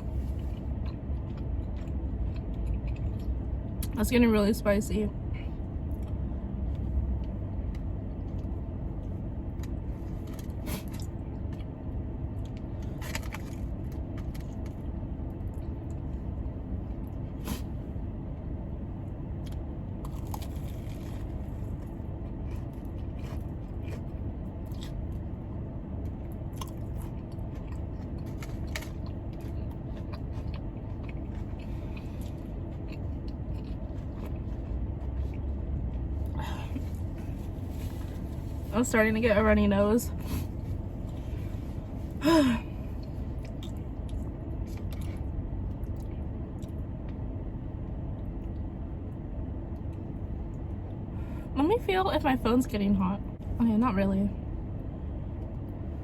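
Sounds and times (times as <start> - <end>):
chewing and biting food: 0.0 - 4.0, 19.3 - 25.4, 26.0 - 37.2, 43.0 - 47.2
car air conditioning hum: 0.0 - 56.0.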